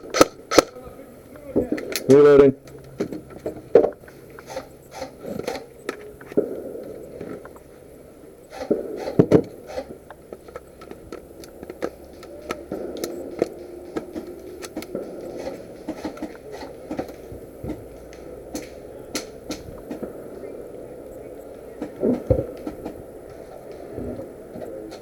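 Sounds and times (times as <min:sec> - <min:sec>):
gun and gear handling clicks: 0:00.0 - 0:00.8, 0:01.8 - 0:06.5, 0:08.5 - 0:17.2, 0:17.8 - 0:20.2.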